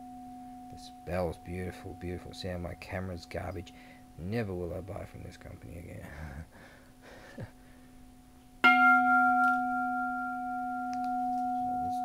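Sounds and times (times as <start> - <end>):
temple bell ringing: 8.6 - 12.0.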